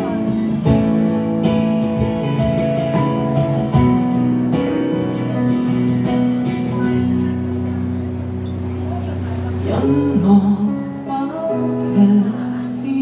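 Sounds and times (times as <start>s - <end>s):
strummed guitar music: 0.0s - 13.0s.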